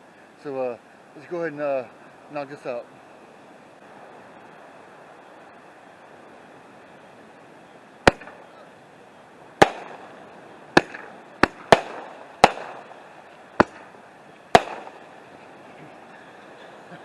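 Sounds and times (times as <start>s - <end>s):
firework shells banging: 8.0s - 8.6s, 9.5s - 15.2s.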